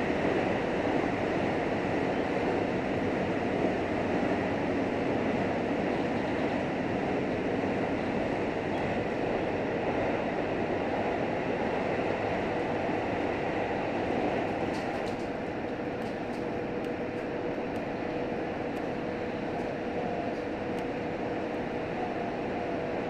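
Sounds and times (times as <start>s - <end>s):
railcar running noise: 0.0s - 23.0s
thin steady whine: 15.2s - 23.0s.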